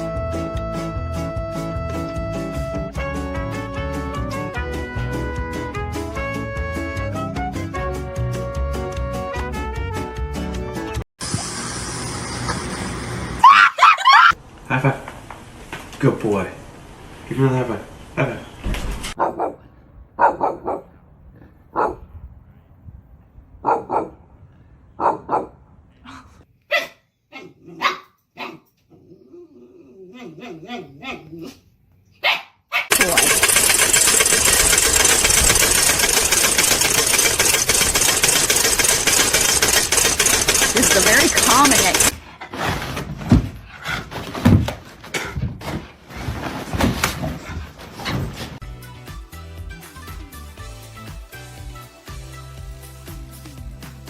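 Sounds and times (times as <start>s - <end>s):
dog barking: 19.2s - 21.0s, 21.7s - 22.1s, 23.6s - 24.2s, 25.0s - 25.6s, 26.7s - 28.7s, 32.2s - 32.9s.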